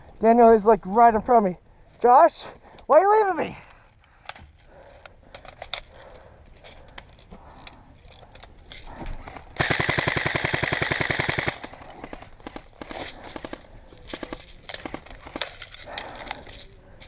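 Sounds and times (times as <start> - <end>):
airsoft gun full-auto burst: 9.6 - 15.4.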